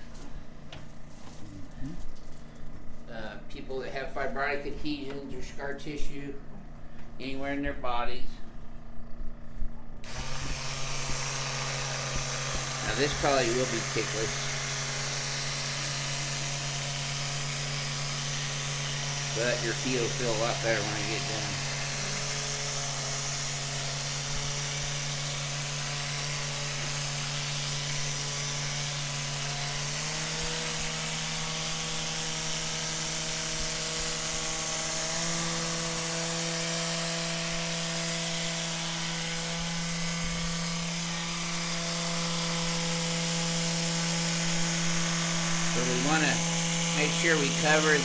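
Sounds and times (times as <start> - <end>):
handheld vibration device buzzing: 10.0 - 48.0.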